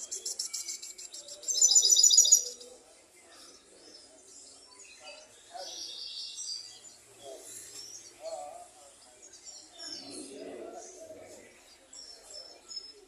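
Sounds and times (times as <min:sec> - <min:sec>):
finch singing: 0:00.0 - 0:02.7.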